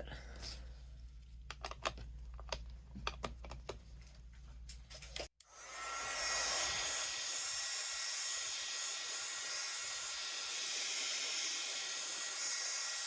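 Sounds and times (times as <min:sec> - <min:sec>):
clicks and taps of handling: 0:01.4 - 0:03.8
electric dryer blowing: 0:05.4 - 0:13.0.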